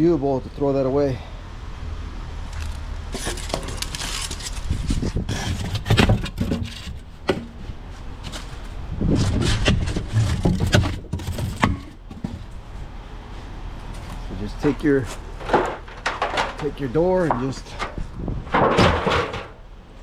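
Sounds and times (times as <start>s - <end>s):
steel pieces scraping and knocking: 2.6s - 7.5s, 15.4s - 17.9s.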